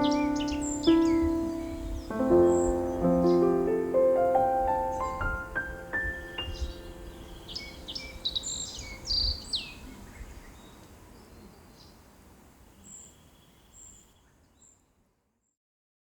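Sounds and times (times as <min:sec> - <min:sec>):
songbirds chirping and singing: 0:00.0 - 0:12.1
low background hiss: 0:00.0 - 0:15.3.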